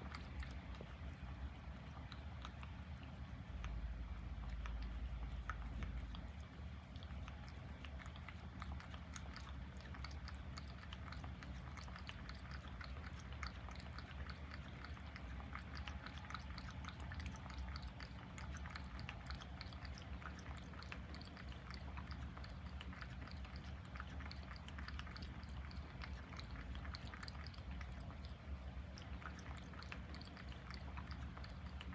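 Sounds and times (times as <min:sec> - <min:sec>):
cat lapping and chewing: 0:00.0 - 0:31.9
steady low hum: 0:00.0 - 0:31.9.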